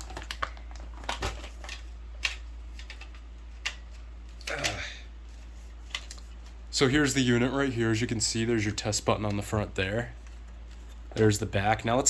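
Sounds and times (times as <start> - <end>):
clicks and knocks of plastic: 0.0 - 3.9
packaging rustle: 0.0 - 4.4, 5.2 - 6.6.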